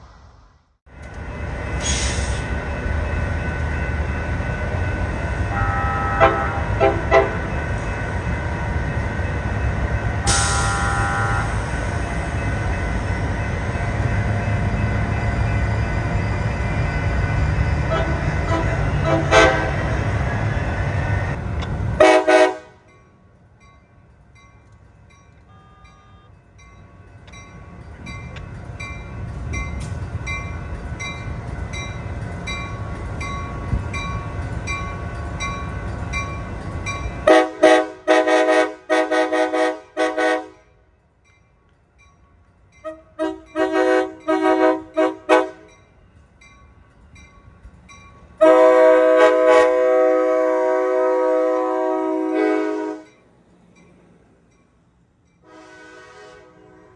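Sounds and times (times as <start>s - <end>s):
train rumbling past: 0.0s - 56.9s
locomotive air horn toots: 5.4s - 8.0s, 10.2s - 12.0s, 17.8s - 21.0s, 22.0s - 22.9s, 25.4s - 26.4s, 37.2s - 40.8s, 42.8s - 45.7s, 48.4s - 53.1s, 55.4s - 56.9s.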